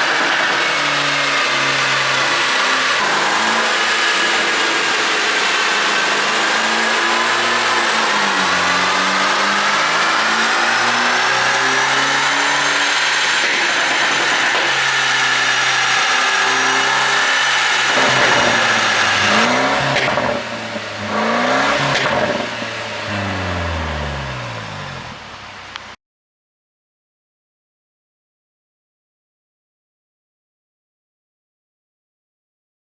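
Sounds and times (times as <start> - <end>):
car engine revving: 0.0 - 26.0
exhaust pops: 13.0 - 20.6, 21.8 - 26.0.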